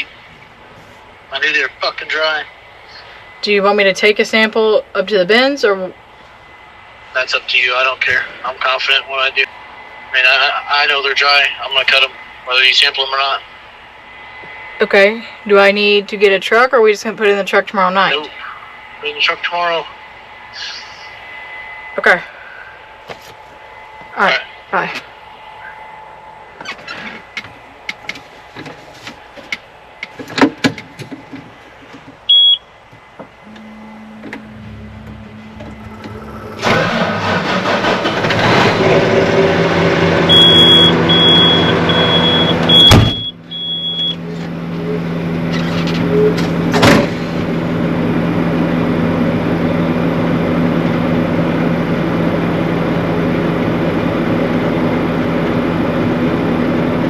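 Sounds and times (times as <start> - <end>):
short high warning beeps: 32.3 - 32.6, 33.5 - 36.9, 40.3 - 44.2
vehicle engine running: 33.5 - 43.6.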